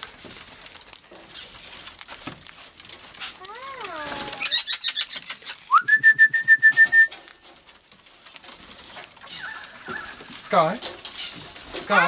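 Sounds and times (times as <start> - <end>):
parrots chirping: 3.2 - 5.8, 9.2 - 12.0.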